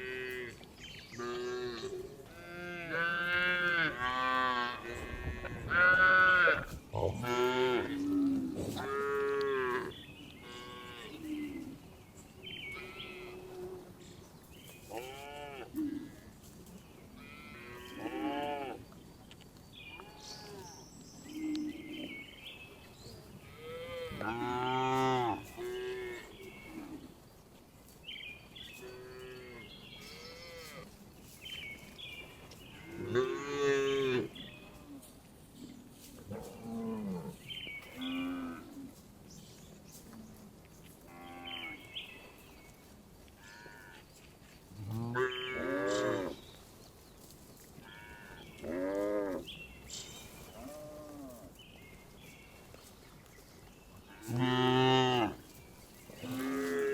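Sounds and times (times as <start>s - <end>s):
cows mooing: 1.2s - 11.6s, 23.5s - 26.3s, 44.8s - 46.4s, 54.1s - 55.4s.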